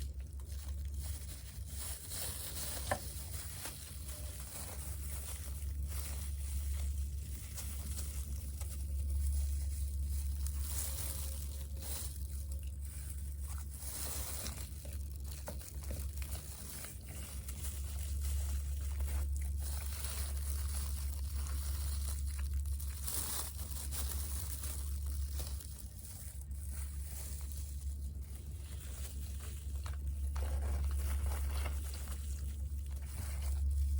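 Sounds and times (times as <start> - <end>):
low hum: 0.0 - 33.9.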